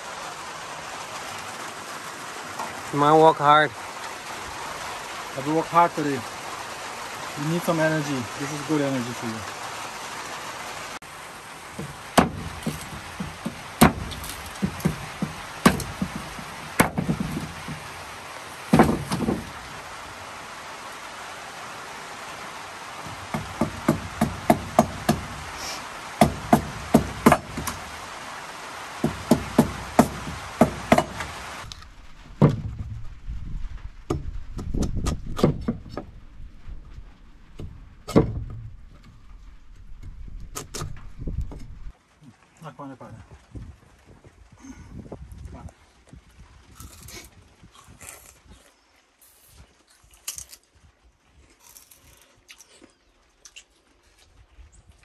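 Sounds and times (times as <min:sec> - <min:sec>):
steady background hiss: 0:00.0 - 0:34.5
blade chopping sugarcane: 0:11.8 - 0:17.9, 0:18.7 - 0:19.5, 0:23.0 - 0:25.5, 0:26.2 - 0:27.8, 0:29.0 - 0:31.4.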